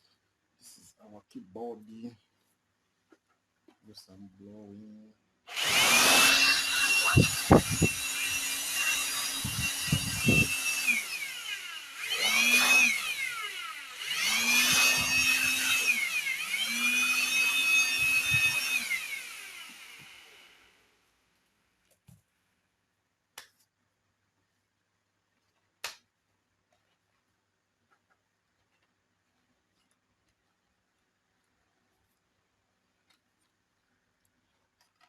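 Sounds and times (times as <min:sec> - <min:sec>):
electric air blower whine: 0:05.5 - 0:20.8.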